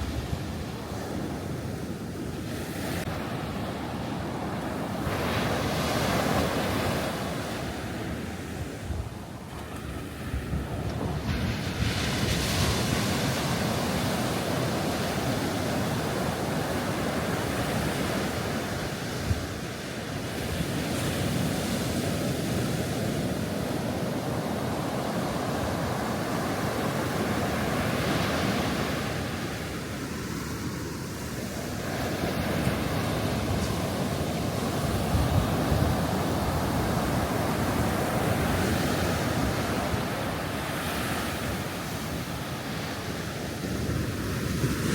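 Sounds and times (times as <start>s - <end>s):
ocean surf breaking on a beach: 0.0s - 44.9s.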